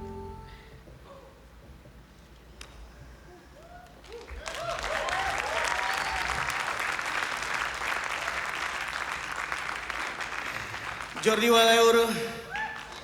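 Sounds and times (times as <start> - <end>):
whoops and cheers: 3.6 - 6.6, 12.5 - 13.0
audience applause: 4.0 - 11.5.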